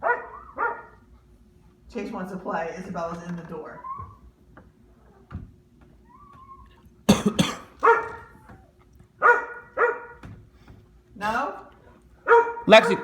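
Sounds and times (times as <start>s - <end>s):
dog barking: 0.0s - 1.0s, 7.8s - 8.3s, 9.2s - 10.2s, 12.2s - 13.0s
dog whining: 6.0s - 6.9s.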